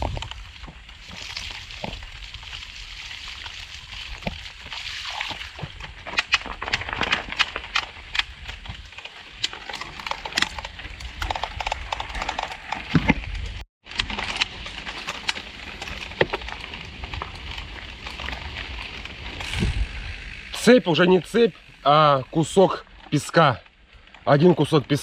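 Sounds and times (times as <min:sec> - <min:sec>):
wind rumble on microphone: 0:00.0 - 0:09.0, 0:15.2 - 0:20.6
bike tyres squelching in mud: 0:00.0 - 0:24.4
clogged bike chain clicking: 0:06.1 - 0:13.0.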